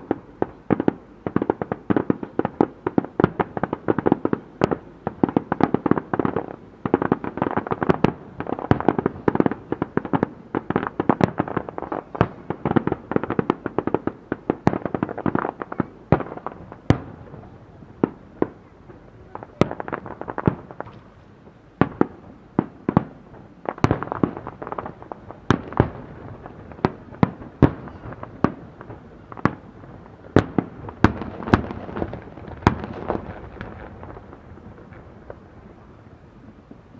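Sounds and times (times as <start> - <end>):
fireworks bangs: 0.0 - 36.9.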